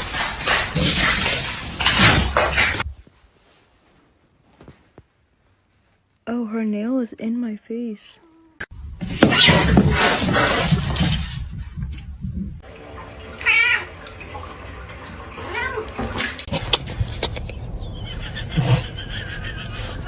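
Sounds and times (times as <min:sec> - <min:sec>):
cat meowing: 0:13.4 - 0:14.0, 0:15.3 - 0:16.2.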